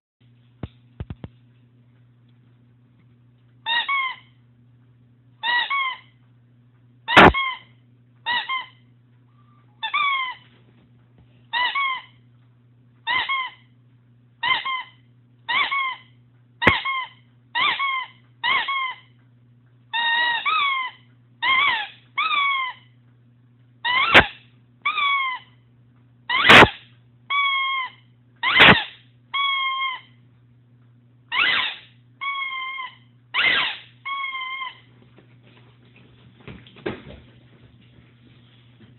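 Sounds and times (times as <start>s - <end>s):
squeaky toy squeaking: 3.7s - 4.3s, 5.4s - 6.1s, 7.1s - 8.8s, 9.8s - 10.4s, 11.5s - 12.2s, 13.1s - 13.6s, 14.4s - 19.1s, 19.9s - 22.8s, 23.8s - 25.5s, 26.3s - 30.1s, 31.3s - 34.9s.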